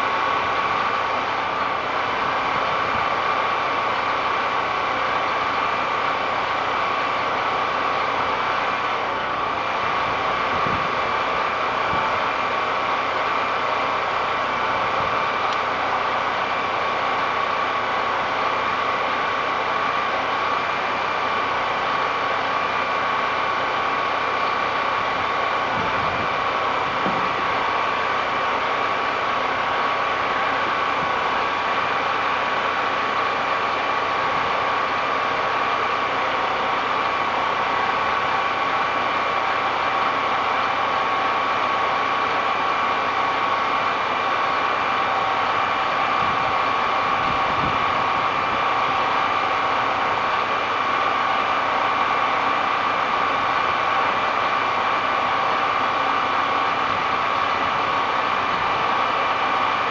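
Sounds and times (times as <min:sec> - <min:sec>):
engine running steadily: 0:00.0 - 0:59.9
steady whine: 0:00.0 - 0:59.9.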